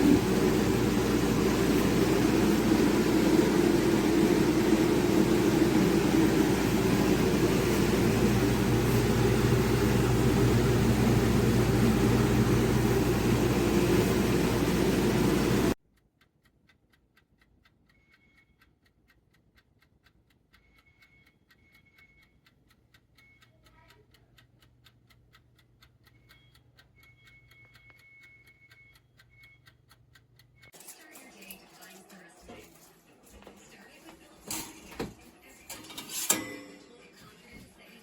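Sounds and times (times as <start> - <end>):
loud mechanical hum: 0.0 - 15.8.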